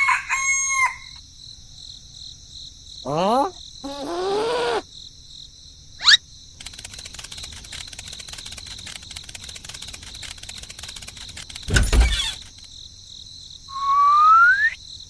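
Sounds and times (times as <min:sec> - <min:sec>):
crickets and insects chirring: 0:00.0 - 0:15.0
short voiced exclamation: 0:03.1 - 0:04.8
rising whistle-like glide: 0:13.7 - 0:14.8.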